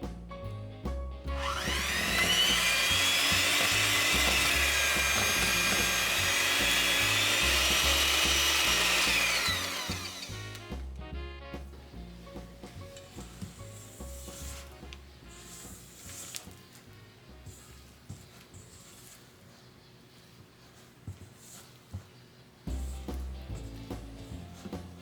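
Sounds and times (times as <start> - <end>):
background music: 0.0 - 19.4, 22.6 - 25.0
electric kitchen mixer whining: 1.4 - 10.8.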